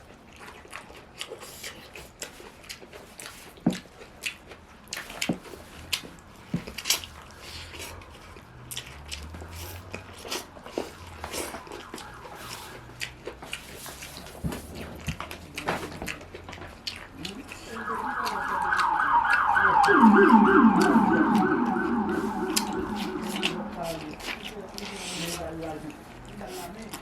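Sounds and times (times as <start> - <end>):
mouths chewing and smacking: 0.0 - 18.5.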